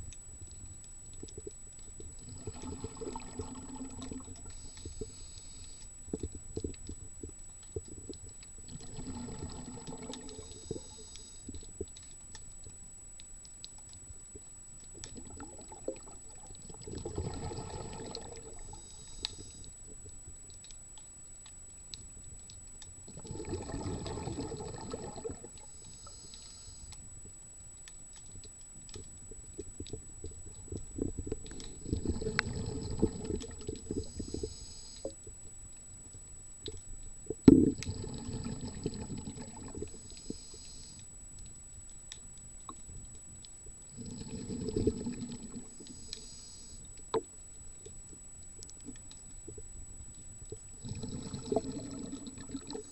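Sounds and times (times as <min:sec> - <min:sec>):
faint clicking: 0:00.0 - 0:52.9
underwater breath bubbles: 0:02.1 - 0:06.8, 0:08.7 - 0:11.7, 0:15.0 - 0:19.8, 0:23.1 - 0:27.0, 0:30.5 - 0:35.2, 0:37.5 - 0:41.0, 0:43.9 - 0:46.9, 0:50.7 - 0:52.9.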